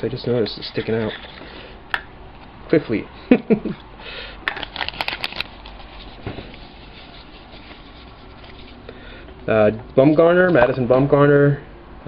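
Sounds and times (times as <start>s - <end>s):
card pack crinkling: 4.5s - 8.8s
faint rustling of cards: 4.7s - 9.0s.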